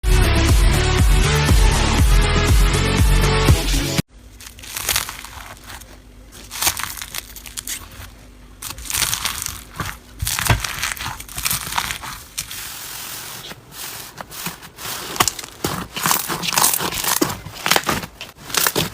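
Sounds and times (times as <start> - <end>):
slime squeezed by hand: 4.4 - 12.7.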